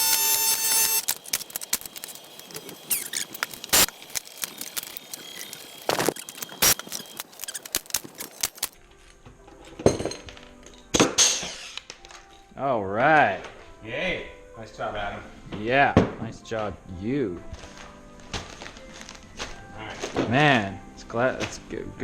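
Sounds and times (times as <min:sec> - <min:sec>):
rivet stems snapping: 0:00.1 - 0:08.8
rivets clicking and rattling: 0:00.6 - 0:08.8.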